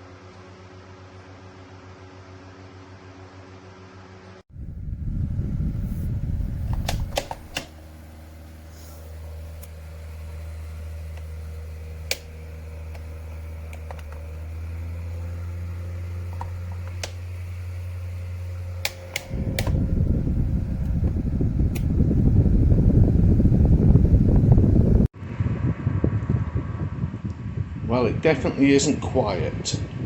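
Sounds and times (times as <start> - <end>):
rumbling rush of air: 4.5 - 7.7, 19.2 - 30.0
desk fan humming: 4.5 - 25.1
sharp clicks: 6.6 - 7.8, 12.0 - 13.1, 13.7 - 14.3, 16.3 - 17.2, 18.8 - 22.0.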